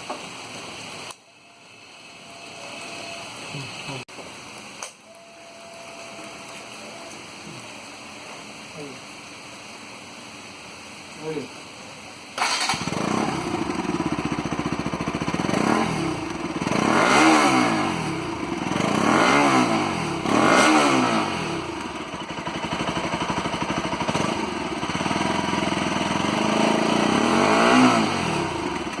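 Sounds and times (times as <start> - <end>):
motorcycle engine idling and revving: 12.4 - 29.0.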